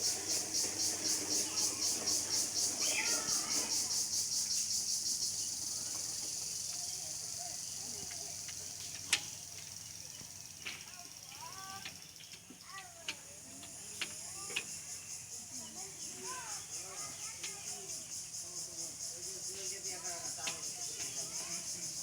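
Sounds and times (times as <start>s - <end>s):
high-pitched hiss: 0.0s - 12.4s.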